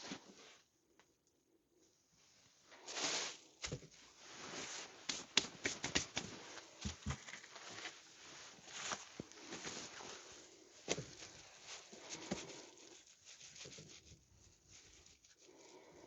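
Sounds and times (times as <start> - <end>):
scuffing and rustling on foam: 2.8 - 15.5.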